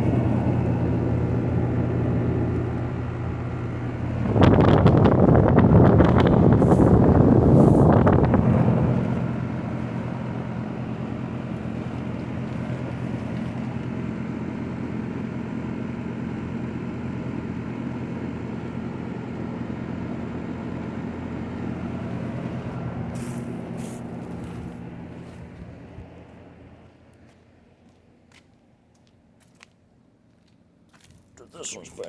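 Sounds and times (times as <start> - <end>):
wind rumble on microphone: 0.0 - 13.8, 21.9 - 26.2
machine humming: 0.0 - 26.8.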